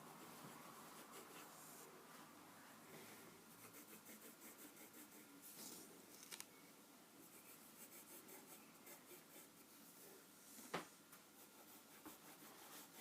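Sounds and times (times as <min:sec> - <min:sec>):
drawing tool scratching on paper: 0:03.6 - 0:05.3, 0:11.4 - 0:13.0.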